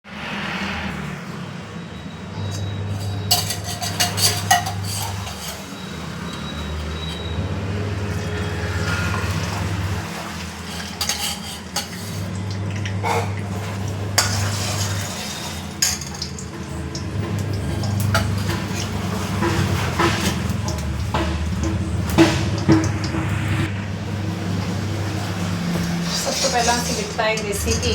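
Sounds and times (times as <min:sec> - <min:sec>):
metal pots and utensils clinking: 0:02.4 - 0:27.9.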